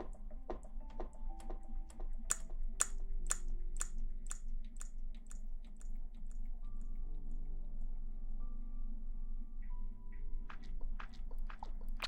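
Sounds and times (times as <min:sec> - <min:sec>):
close crackling and clicking: 0:00.0 - 0:06.5.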